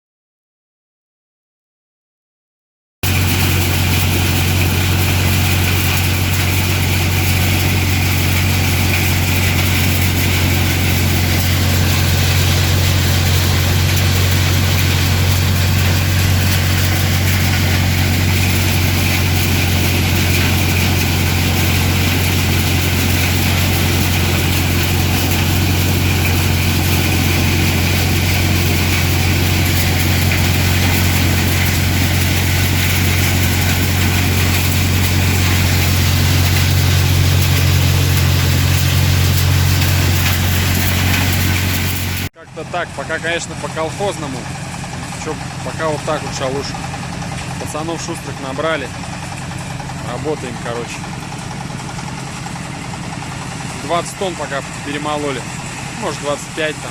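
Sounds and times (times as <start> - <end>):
machine low hum: 3.0 - 42.3.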